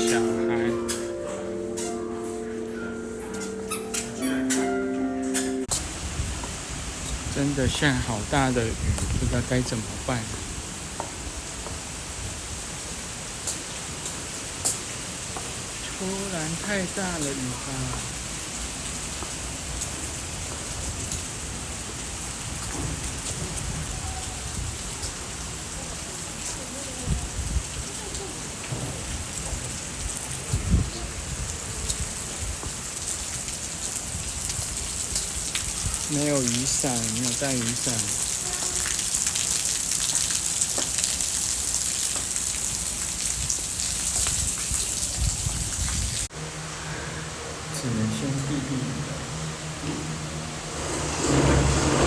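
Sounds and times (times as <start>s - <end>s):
ticks of raindrops: 5.6s - 46.3s
heavy rain hissing: 5.7s - 52.0s.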